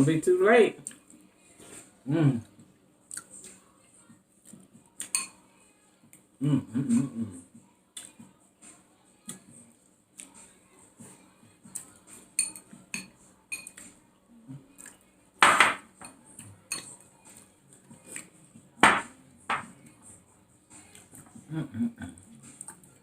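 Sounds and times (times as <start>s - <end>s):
cutlery clinking against a plate: 5.0s - 5.4s, 12.4s - 13.9s, 15.4s - 17.0s.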